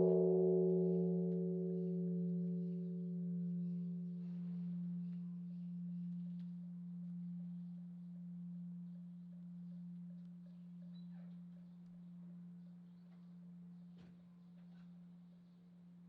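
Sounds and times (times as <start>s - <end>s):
temple bell hum: 0.0s - 10.8s.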